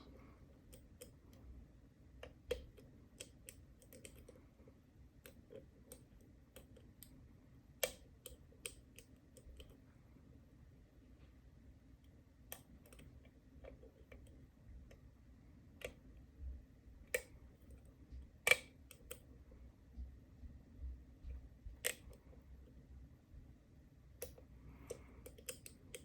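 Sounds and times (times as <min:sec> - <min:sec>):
lock pick clicking in lock: 0:18.5 - 0:19.2.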